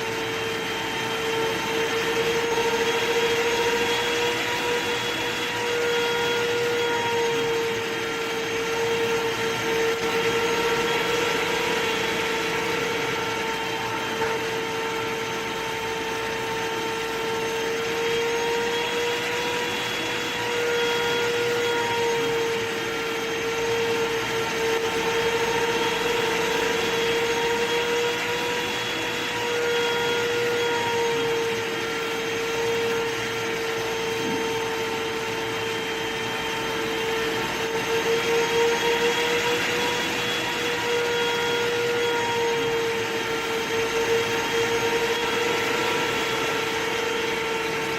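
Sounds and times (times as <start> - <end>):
vacuum cleaner running: 0.0 - 47.9.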